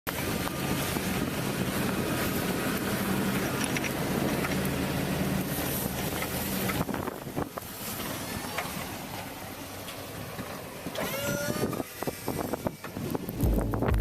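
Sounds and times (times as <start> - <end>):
wind noise on microphone: 0.1 - 4.2, 5.4 - 7.8, 11.0 - 14.0
engine running: 0.1 - 14.0
short squeaky gliding tone: 11.0 - 12.0.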